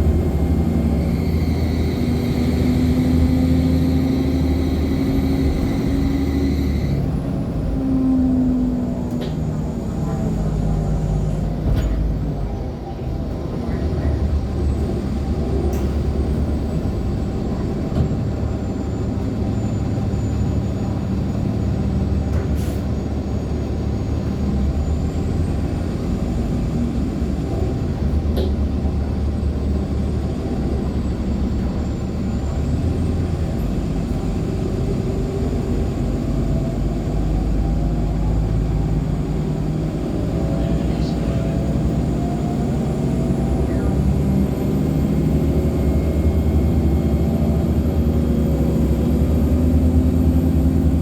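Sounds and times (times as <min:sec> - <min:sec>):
bus engine low rumble: 0:00.0 - 0:51.0
bus body rattles: 0:04.2 - 0:44.3.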